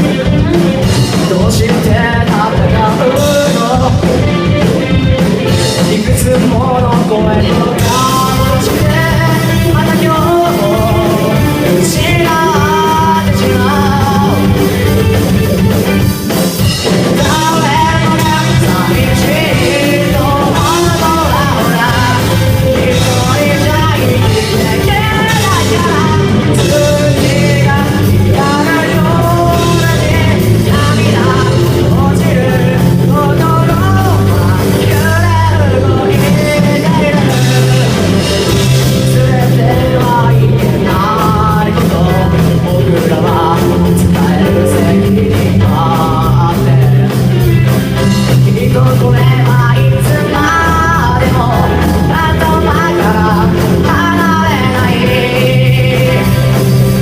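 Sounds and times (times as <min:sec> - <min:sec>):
low bass notes: 0:00.0 - 0:57.0
rock song with vocals: 0:00.0 - 0:57.0.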